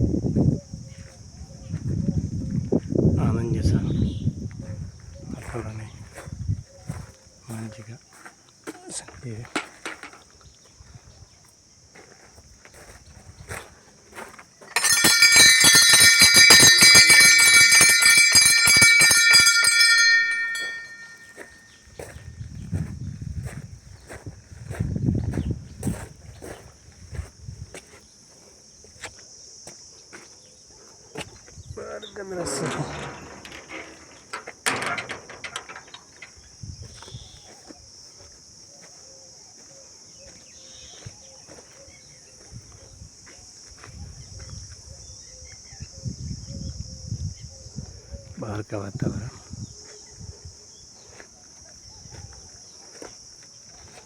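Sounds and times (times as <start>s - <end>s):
insects chirring: 0.0s - 54.0s
sharp knocks and clatters: 9.5s - 10.2s, 14.7s - 21.5s, 32.2s - 37.1s
metal bell rung rapidly: 14.7s - 21.5s.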